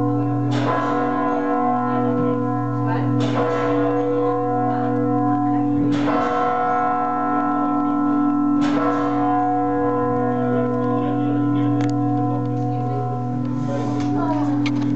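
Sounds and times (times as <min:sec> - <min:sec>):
hum of ringing bells: 0:00.0 - 0:14.9
large church bells tolling: 0:00.0 - 0:14.9.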